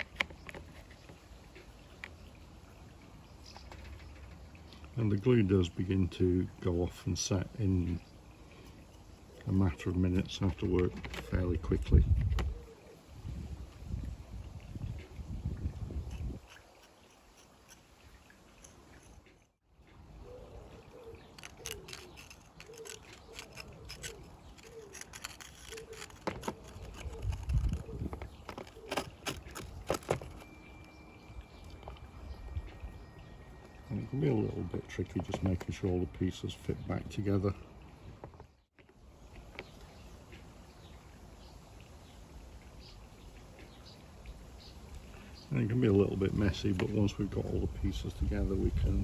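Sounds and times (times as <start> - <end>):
ceramic pieces clicking: 21.2 - 27.8.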